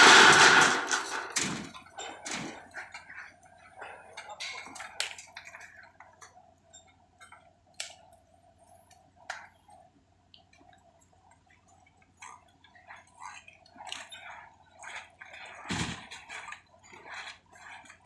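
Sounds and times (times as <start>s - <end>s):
mechanical hum: 0.0s - 4.0s.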